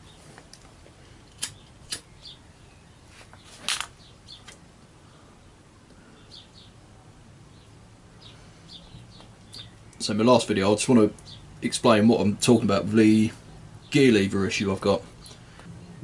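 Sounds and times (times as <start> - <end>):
small birds chirping: 0.0 - 16.0
sharp clicks: 1.3 - 2.1.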